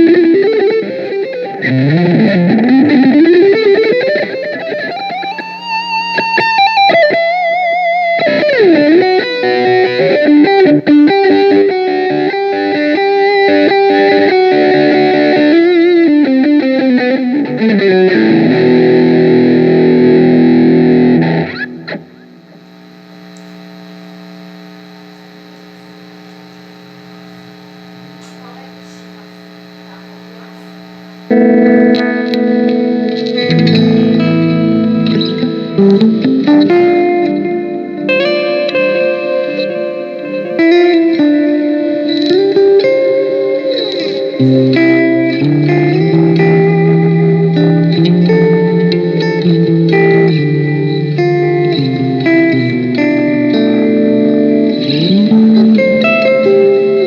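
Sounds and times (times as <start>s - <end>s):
electric guitar lead notes: 0.0s - 57.0s
guitar chord strummed: 0.0s - 57.0s.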